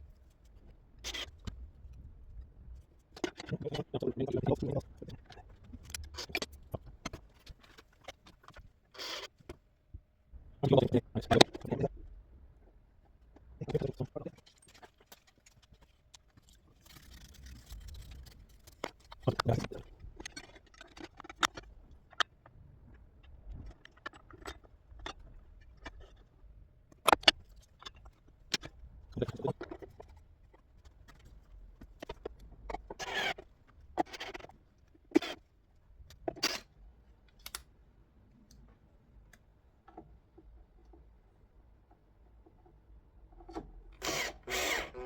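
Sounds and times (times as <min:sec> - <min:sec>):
metal parts clicking and knocking: 0:13.6 - 0:22.3.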